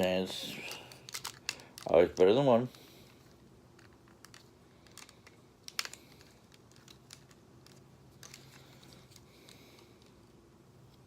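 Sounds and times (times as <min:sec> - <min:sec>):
plastic toy parts clicking: 0:01.0 - 0:02.0, 0:03.8 - 0:08.5.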